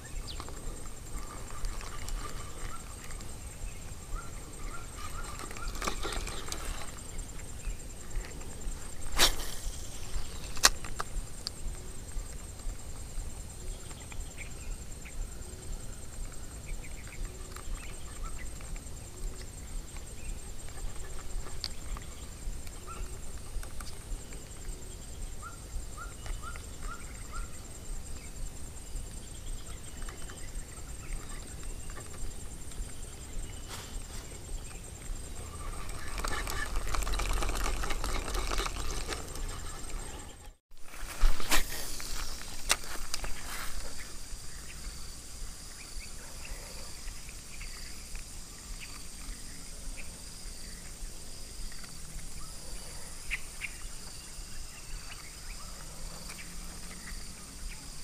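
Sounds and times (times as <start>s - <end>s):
rustling noise: 0.0s - 11.3s, 31.1s - 45.0s.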